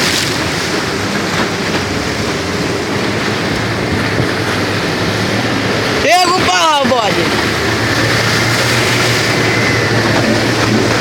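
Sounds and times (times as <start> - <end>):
boat engine hum: 0.0 - 11.0
water rushing: 0.0 - 11.0.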